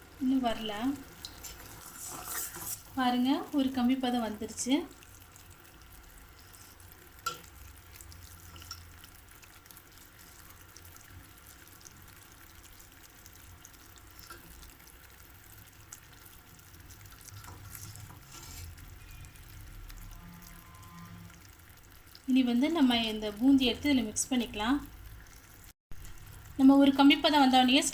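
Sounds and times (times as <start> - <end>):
syrup simmering in a pan: 0.0 - 27.9.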